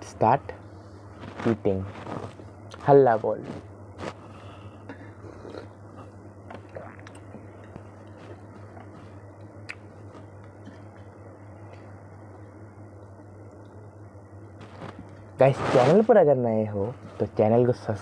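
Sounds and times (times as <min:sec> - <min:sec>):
steady low hum: 0:00.0 - 0:18.0
soft eating clicks and squishes: 0:04.9 - 0:15.3.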